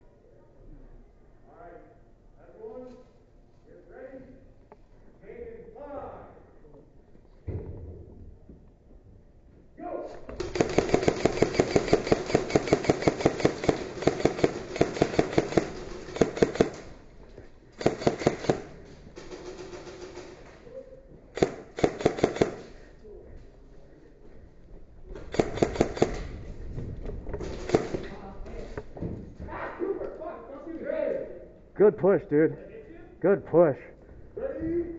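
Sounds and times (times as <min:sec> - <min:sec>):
airsoft guns firing bursts: 0:10.3 - 0:20.7, 0:21.3 - 0:22.9, 0:25.2 - 0:26.5, 0:27.4 - 0:28.1.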